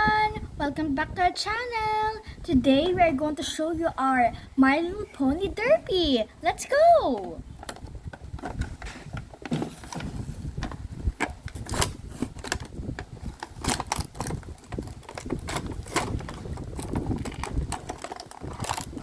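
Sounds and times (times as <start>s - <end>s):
packaging crinkling and crackling: 7.6s - 19.0s
packaging rustling: 7.6s - 19.0s.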